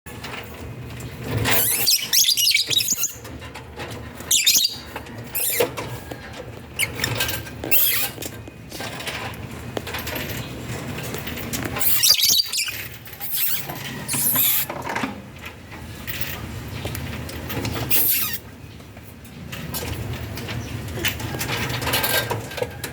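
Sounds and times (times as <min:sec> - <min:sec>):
lovebirds shrill chatter: 0:01.4 - 0:03.4, 0:04.2 - 0:08.2, 0:11.8 - 0:14.7, 0:17.8 - 0:18.4.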